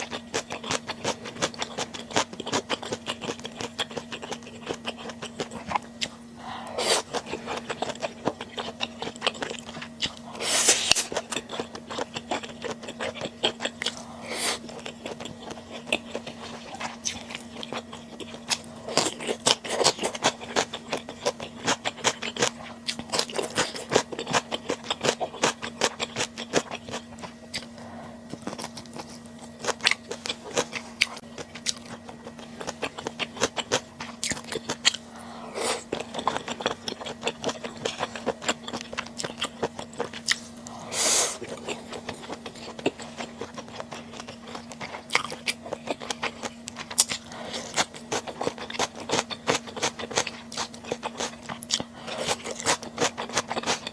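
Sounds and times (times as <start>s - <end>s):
chewing and crunching: 0.0s - 53.9s
steady low hum: 0.0s - 53.9s.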